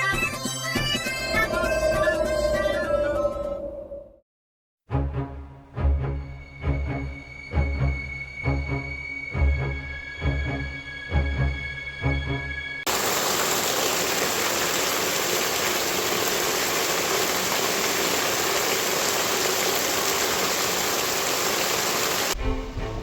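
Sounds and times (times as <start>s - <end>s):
music: 0.0s - 2.1s, 4.9s - 12.9s, 22.4s - 23.0s
heavy rain pouring: 12.9s - 22.4s.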